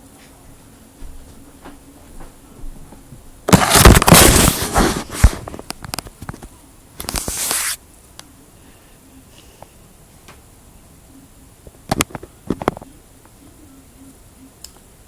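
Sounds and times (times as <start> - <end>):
rustling and crackling: 0.0 - 8.2, 11.6 - 13.6.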